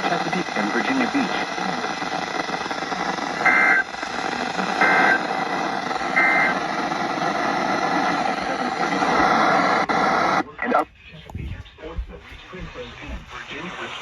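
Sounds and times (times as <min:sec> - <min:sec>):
emergency alert data bursts: 0:00.0 - 0:08.7
radio static hiss: 0:00.0 - 0:14.0.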